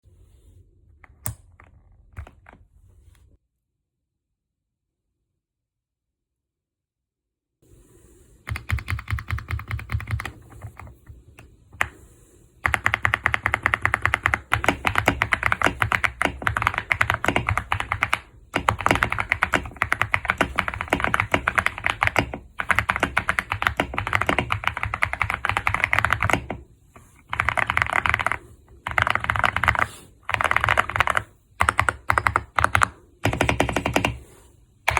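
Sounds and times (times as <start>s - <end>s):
mechanical keyboard typing fast: 8.5s - 12.0s, 12.6s - 34.2s.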